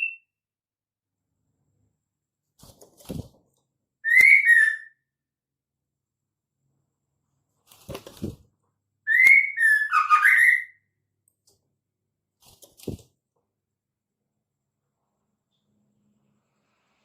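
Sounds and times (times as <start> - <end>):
bird whistled call: 4.0 - 5.0.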